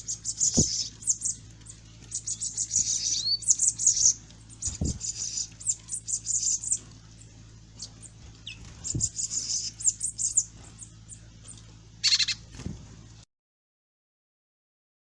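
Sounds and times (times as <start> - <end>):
small birds chirping: 0.0 - 13.2
steady low hum: 0.0 - 13.3
harsh bird call: 12.0 - 12.4.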